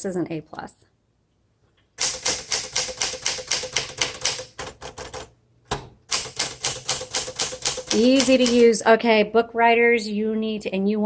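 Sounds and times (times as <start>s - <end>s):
typewriter keystrokes: 2.0s - 8.7s.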